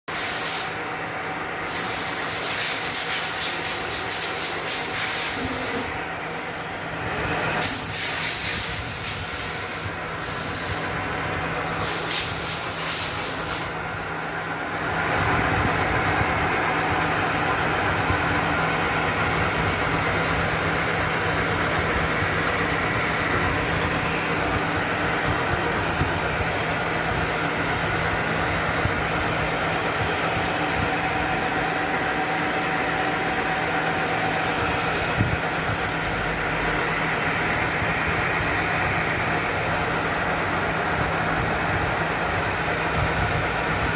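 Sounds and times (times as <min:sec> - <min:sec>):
hiss: 0:00.1 - 0:00.8, 0:01.6 - 0:06.0, 0:07.6 - 0:11.0, 0:11.8 - 0:13.8.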